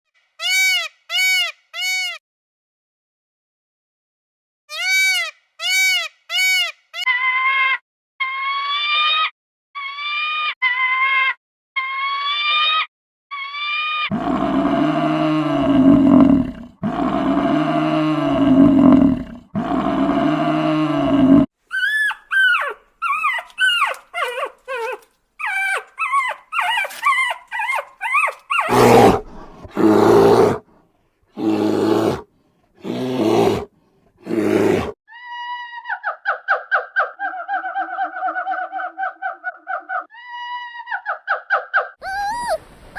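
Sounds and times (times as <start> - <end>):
animal cries rising and falling: 4.7 - 30.6, 32.8 - 35.7, 42.0 - 42.7
animal deep roars: 14.1 - 21.5, 28.7 - 30.6.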